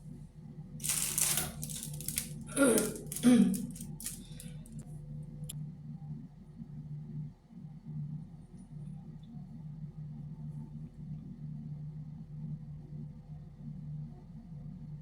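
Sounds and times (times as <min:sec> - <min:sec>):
low steady hum: 0:00.0 - 0:15.0
glue hissing from nozzle: 0:00.8 - 0:04.4.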